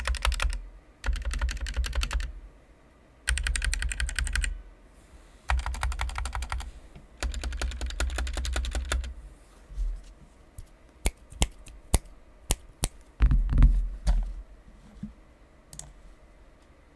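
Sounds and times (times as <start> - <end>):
keyboard typing: 0.0 - 2.3, 3.3 - 4.6, 5.5 - 9.1.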